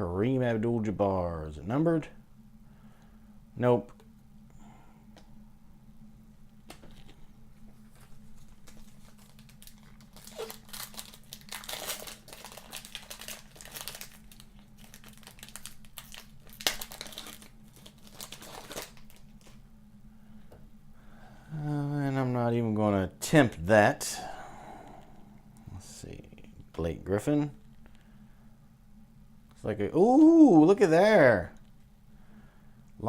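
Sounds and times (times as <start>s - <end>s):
foil wrapper crinkling and tearing: 8.3s - 19.6s.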